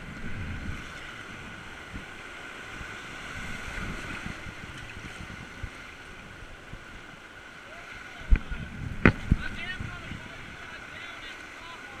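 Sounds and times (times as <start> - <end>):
wind buffeting microphone: 0.0 - 11.0
whitewater rushing: 6.0 - 12.0
low thumps: 8.3 - 9.7.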